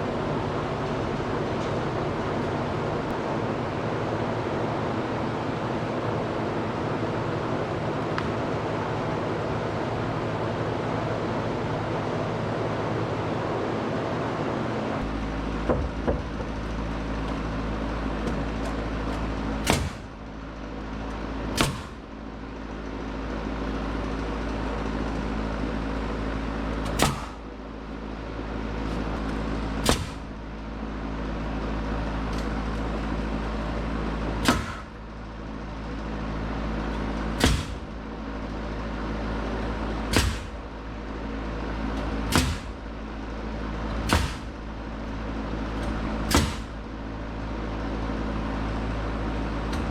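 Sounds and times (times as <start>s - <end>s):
machine hum: 0.0s - 49.9s
sharp bangs: 19.6s - 20.3s, 21.5s - 22.2s, 26.9s - 27.5s, 29.8s - 30.4s, 37.4s - 38.0s, 40.1s - 40.7s, 42.3s - 43.0s, 44.0s - 44.6s, 46.3s - 46.9s.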